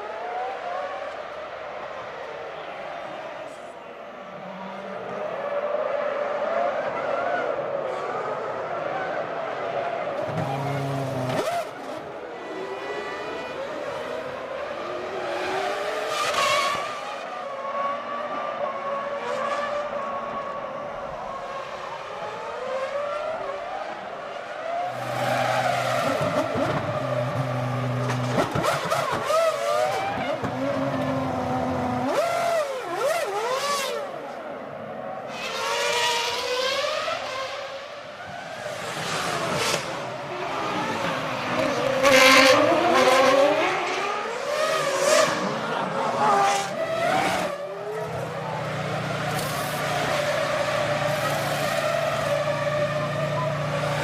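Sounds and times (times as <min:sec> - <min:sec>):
racing car engines revving past: 0:04.3 - 0:20.5, 0:21.5 - 0:54.0.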